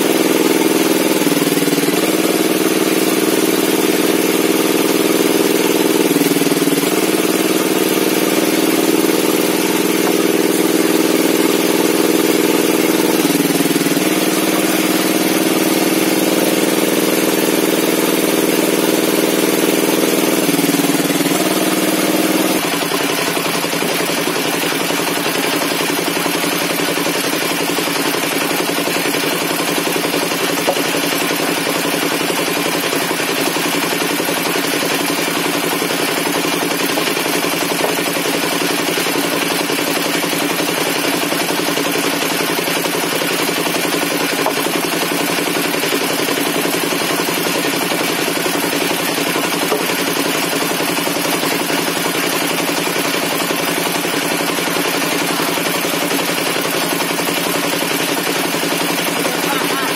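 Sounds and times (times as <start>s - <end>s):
circular table saw cutting wood: 0.0s - 59.9s.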